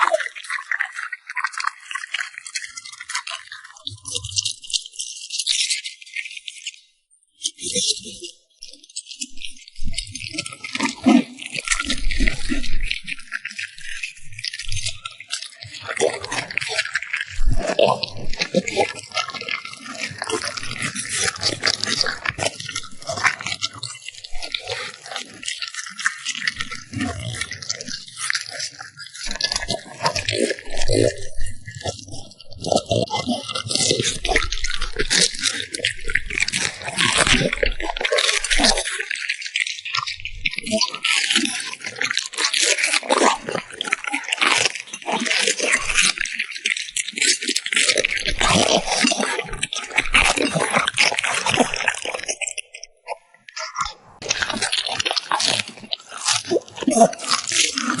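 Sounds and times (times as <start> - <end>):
puppy chewing food: 17.5 - 39.4, 40.0 - 58.0.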